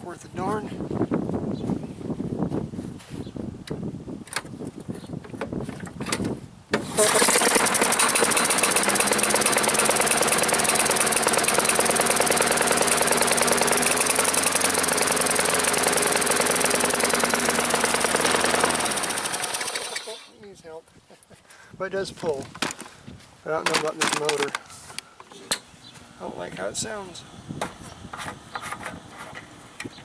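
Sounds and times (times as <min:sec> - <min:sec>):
small engine running with knock: 0:06.8 - 0:20.3.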